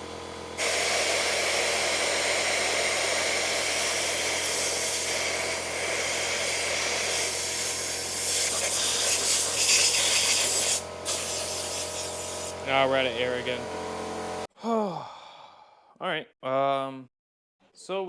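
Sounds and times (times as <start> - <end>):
compressed air hissing from blow gun: 0.6 - 12.6.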